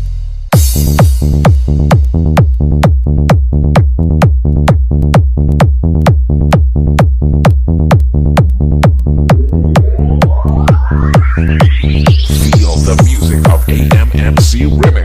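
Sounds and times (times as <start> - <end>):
electronic dance music: 0.5 - 15.0
rising synth sweep: 8.9 - 14.4.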